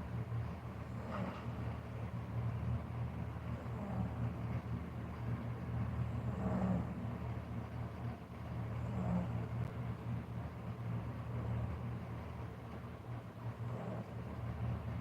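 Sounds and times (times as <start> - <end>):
steady low hum: 0.0 - 15.0
person snoring softly: 6.2 - 7.0, 8.8 - 9.5.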